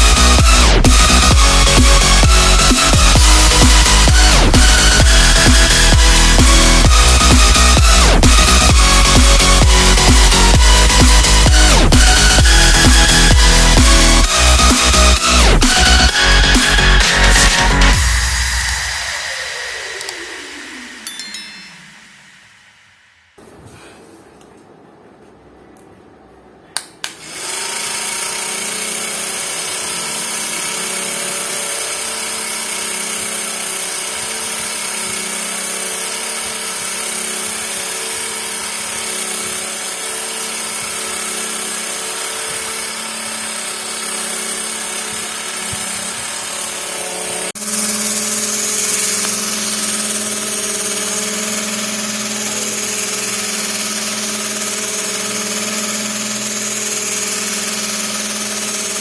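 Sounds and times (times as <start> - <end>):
small electric motors whining: 0.0 - 22.4, 27.2 - 59.0
switch click: 26.8 - 27.2.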